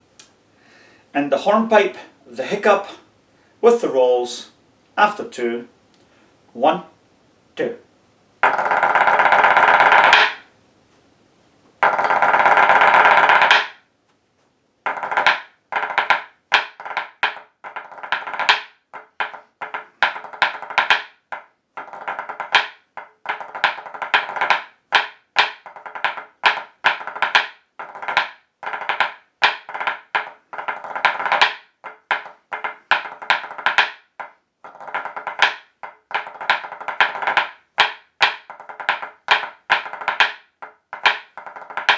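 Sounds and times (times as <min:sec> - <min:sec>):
hard shoes tapping on wooden floor: 0:25.4 - 0:41.9.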